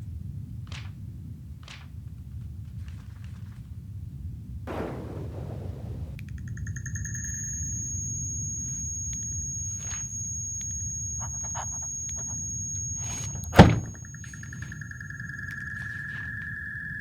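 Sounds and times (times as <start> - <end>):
loud thud: 13.0 - 14.0.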